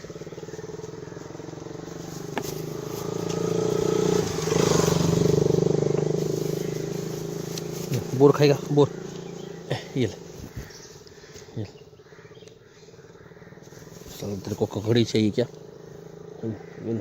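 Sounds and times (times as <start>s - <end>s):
vehicle engine passing by: 0.0s - 10.6s.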